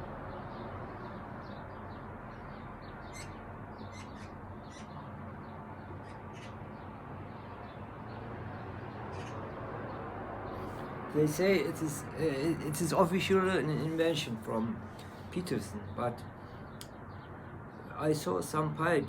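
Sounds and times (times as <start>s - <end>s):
birds chirping: 0.0s - 19.0s
steady background hum: 10.6s - 19.0s.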